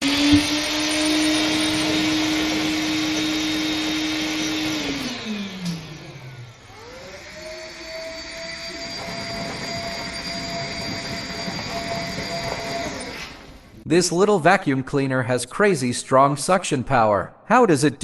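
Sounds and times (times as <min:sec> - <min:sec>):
mini vacuum cleaner whine: 0:00.0 - 0:13.8.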